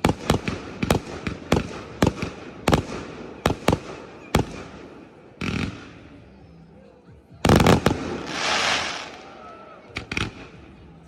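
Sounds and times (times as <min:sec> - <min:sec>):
firework shells bursting: 0:07.6 - 0:09.4.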